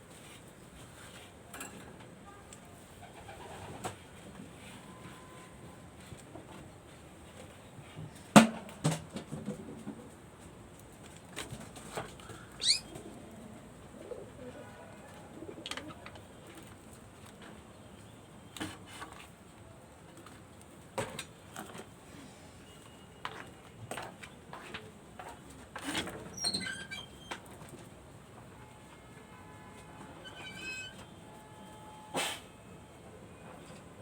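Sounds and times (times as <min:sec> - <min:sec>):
pigeons cooing: 0:12.6 - 0:14.6.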